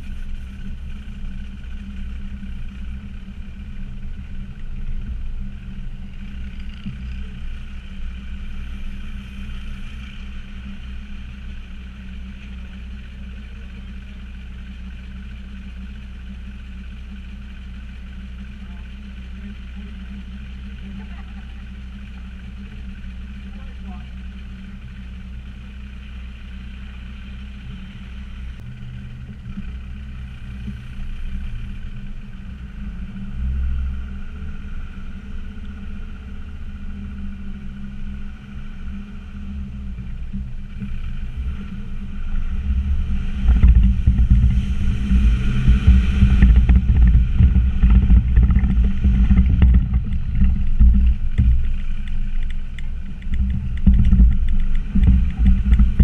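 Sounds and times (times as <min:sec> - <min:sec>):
diesel engine rumbling: 0:00.0 - 0:56.0
vehicle knocks and jolts: 0:42.7 - 0:56.0.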